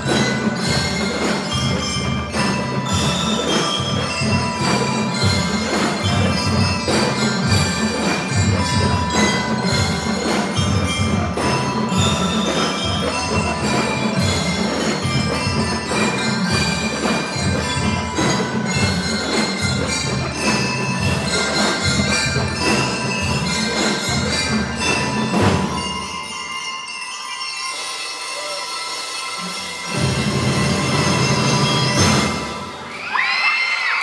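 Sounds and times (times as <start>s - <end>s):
marching drum beat: 0.0s - 26.3s
bell lyres playing melody: 0.0s - 33.1s.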